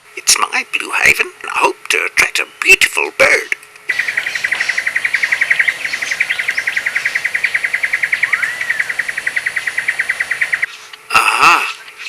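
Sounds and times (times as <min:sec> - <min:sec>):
rapid pulsing animal call: 0:03.9 - 0:12.0.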